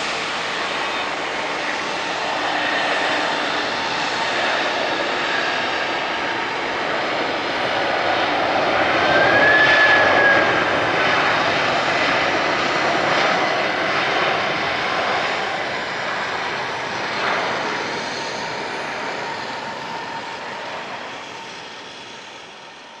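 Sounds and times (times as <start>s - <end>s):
jet plane passing: 0.0s - 23.0s.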